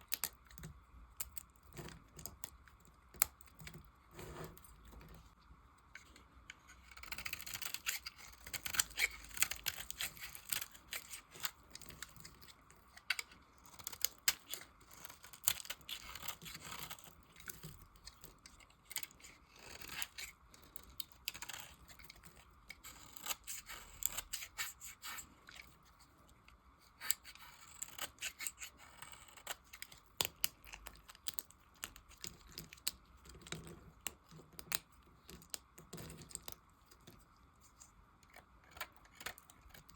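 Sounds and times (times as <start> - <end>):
knife cutting soap scraps: 6.9 - 20.3.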